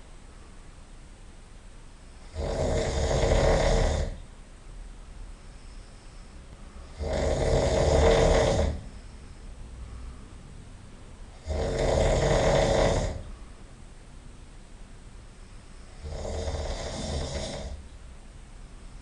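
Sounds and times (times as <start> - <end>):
person snoring loudly: 2.2 - 4.2, 6.9 - 9.0, 11.3 - 13.3, 15.9 - 17.8.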